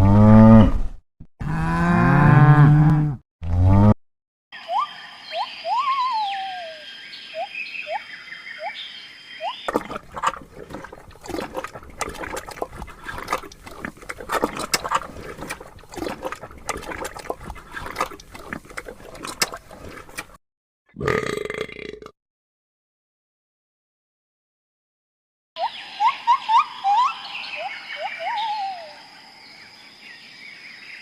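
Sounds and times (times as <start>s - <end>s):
rising chirps and whistled tones: 4.6s - 9.7s, 25.6s - 29.1s
water splashing and trickling: 9.4s - 20.4s.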